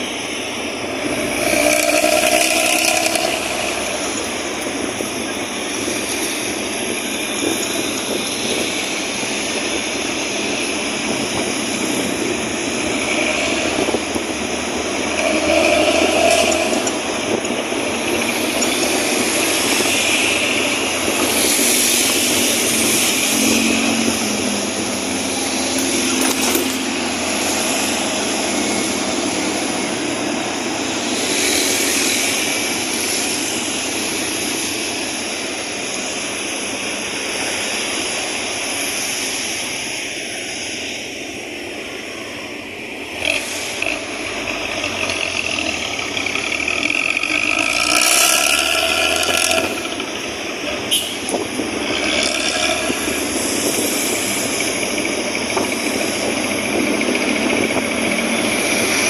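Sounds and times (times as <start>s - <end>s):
bus engine with growling exhaust: 0.0s - 59.0s
road noise: 0.0s - 59.0s.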